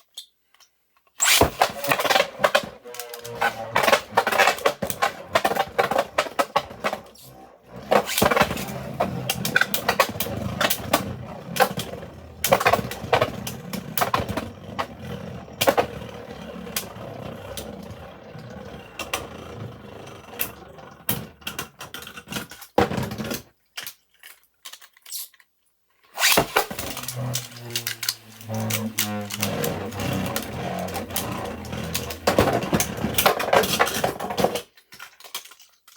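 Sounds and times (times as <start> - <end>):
whir of spinning tops: 1.2 - 21.5, 26.2 - 34.6.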